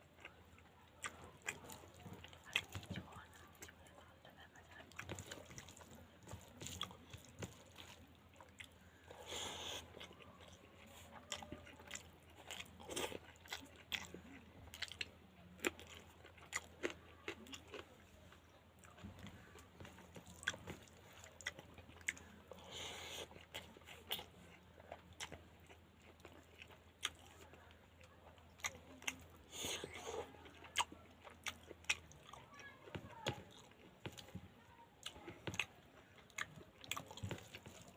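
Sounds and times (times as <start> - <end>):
person chewing: 0.0 - 34.4, 35.0 - 37.9.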